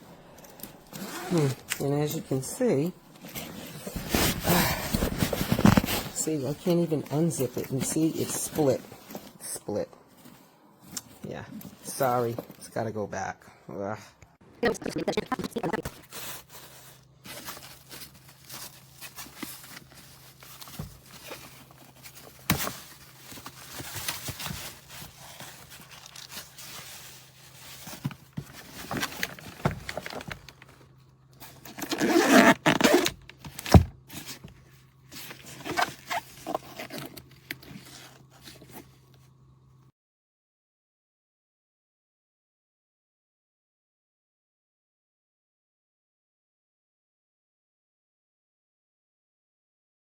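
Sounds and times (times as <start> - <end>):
suitcase zipper rasping: 0.9 - 1.7, 3.2 - 6.1, 31.6 - 33.2
suitcase scrapes and knocks: 3.2 - 6.2.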